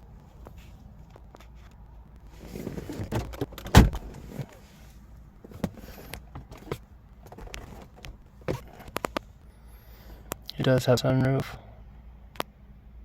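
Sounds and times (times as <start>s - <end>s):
heavy thump: 3.7s - 4.5s
rustling clicks and knocks: 5.5s - 9.3s.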